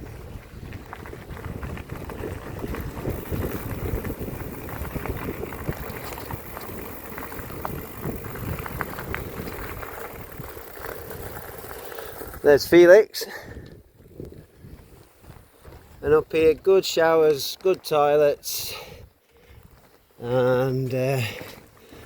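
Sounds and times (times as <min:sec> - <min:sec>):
wind rumbling on microphone: 0:00.0 - 0:12.8, 0:13.4 - 0:16.7
bicycle clicks and rattles: 0:00.0 - 0:15.8
bicycle tyre noise: 0:00.0 - 0:22.0.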